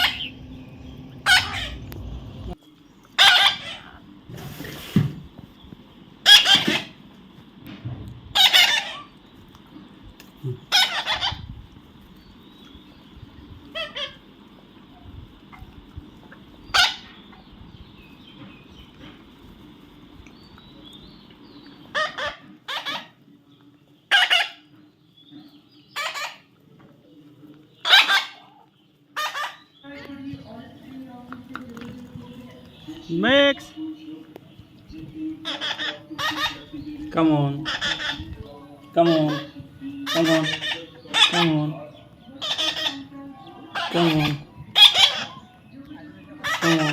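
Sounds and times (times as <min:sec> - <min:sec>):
baby parrot squawking: 0:00.0 - 0:00.4, 0:01.2 - 0:02.5, 0:03.2 - 0:04.0, 0:06.2 - 0:07.0, 0:08.3 - 0:09.1, 0:10.7 - 0:11.6, 0:13.7 - 0:14.2, 0:16.7 - 0:17.2, 0:21.9 - 0:23.2, 0:24.1 - 0:24.7, 0:25.9 - 0:26.5, 0:27.8 - 0:28.6, 0:29.2 - 0:29.8, 0:35.4 - 0:36.9, 0:37.6 - 0:45.6, 0:46.4 - 0:46.9.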